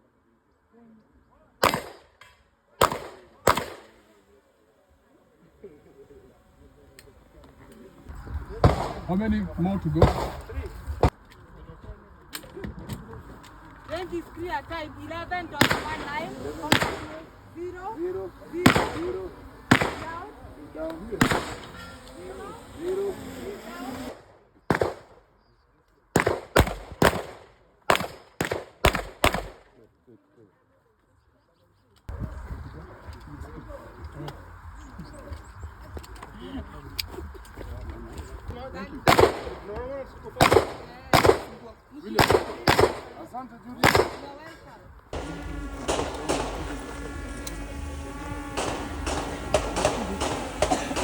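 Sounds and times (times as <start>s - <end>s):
gunshots: 1.6s - 2.1s, 2.8s - 4.1s, 8.6s - 11.1s, 15.6s - 17.3s, 18.6s - 20.3s, 21.1s - 22.1s, 23.8s - 25.2s, 26.1s - 29.7s, 39.0s - 44.5s, 45.1s - 51.0s.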